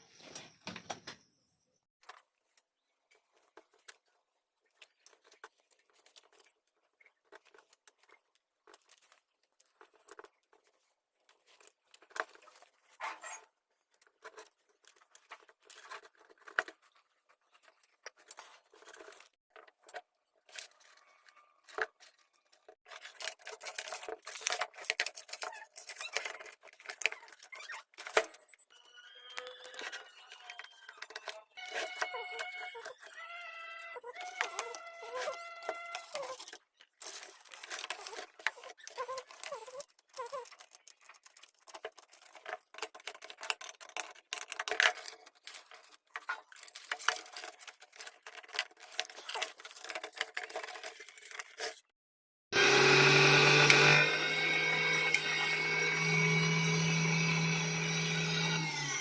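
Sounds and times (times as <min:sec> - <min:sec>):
clicks and rattles of parts: 0:35.6 - 0:51.8.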